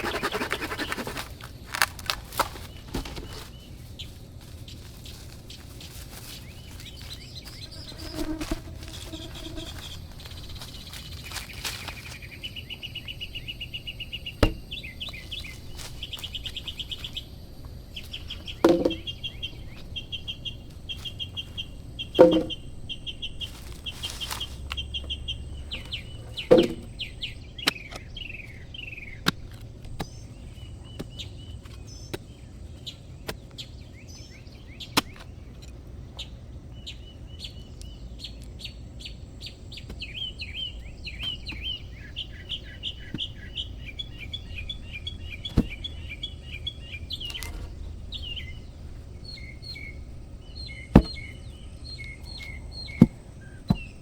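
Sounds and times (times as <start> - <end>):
small birds chirping trills: 0.0 - 54.0
sharp knocks: 18.6 - 19.1, 22.2 - 22.6, 50.7 - 51.4.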